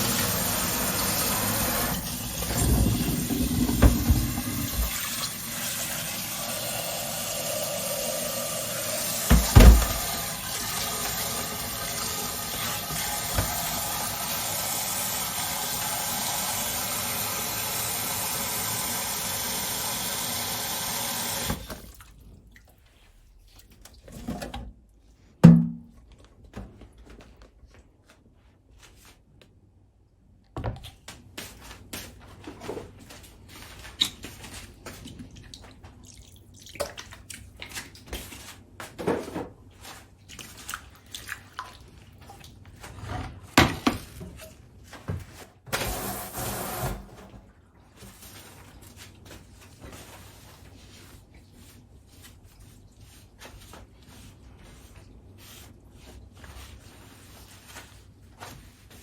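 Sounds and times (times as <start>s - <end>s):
tap water running into sink: 0.0s - 22.0s
knocks and splashes: 2.0s - 5.2s, 9.3s - 11.2s, 13.0s - 13.8s.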